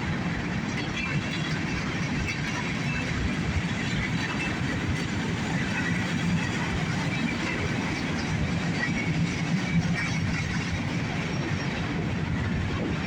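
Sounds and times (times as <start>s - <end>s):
train wheels rumbling on rails: 0.0s - 13.0s.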